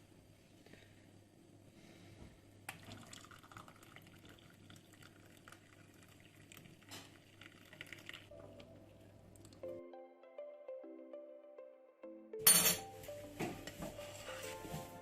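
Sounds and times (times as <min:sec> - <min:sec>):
faint liquid sound: 0:02.7 - 0:09.6.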